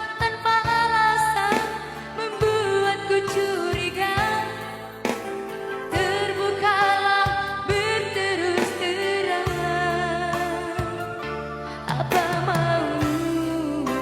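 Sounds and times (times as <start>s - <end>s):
backing music: 0.0s - 14.0s
person singing with vibrato: 0.0s - 14.0s.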